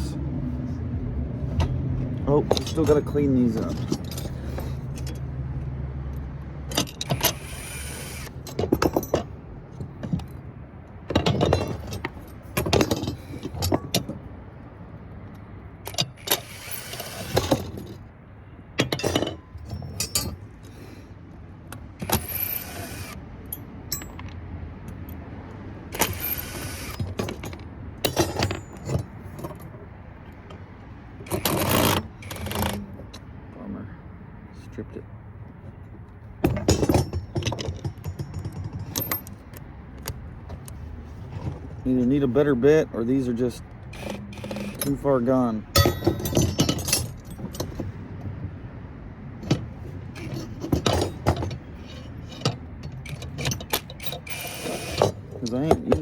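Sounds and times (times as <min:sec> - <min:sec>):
metal clinking: 0:18.8 - 0:20.8, 0:22.0 - 0:25.2, 0:36.4 - 0:40.8, 0:45.8 - 0:48.0, 0:49.4 - 0:56.0
power drill bursts: 0:22.1 - 0:23.2, 0:43.9 - 0:44.8.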